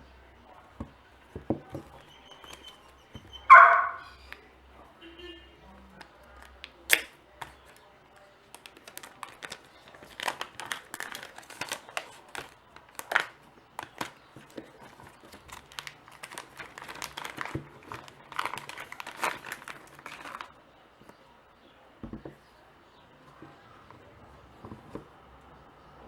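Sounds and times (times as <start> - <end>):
packaging crinkling and rustling: 6.0 - 21.2.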